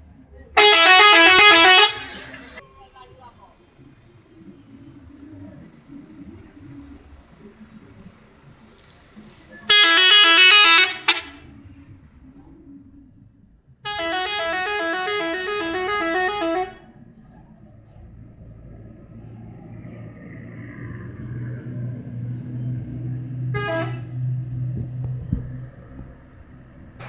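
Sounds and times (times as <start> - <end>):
bus musical horn melody: 0.6 - 2.6, 9.7 - 11.5, 13.8 - 17.0, 23.3 - 24.7.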